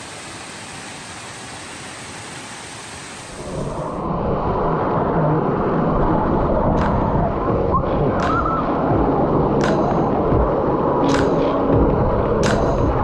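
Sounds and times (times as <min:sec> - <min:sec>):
waterfall rushing: 0:00.0 - 0:04.0.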